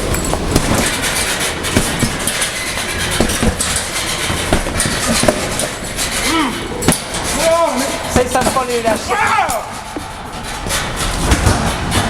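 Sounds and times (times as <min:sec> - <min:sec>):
fists hitting punching bag: 0:00.4 - 0:01.0, 0:01.7 - 0:02.5, 0:03.1 - 0:05.5.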